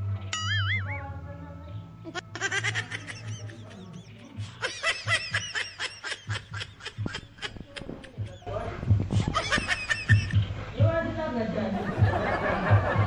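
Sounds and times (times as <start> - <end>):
background music: 0.0 - 13.0
person snickering laughter: 2.1 - 8.4, 9.1 - 10.5.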